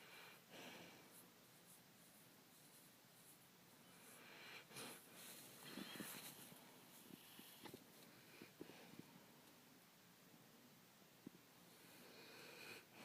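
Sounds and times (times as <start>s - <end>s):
faint snoring: 11.8s - 13.0s.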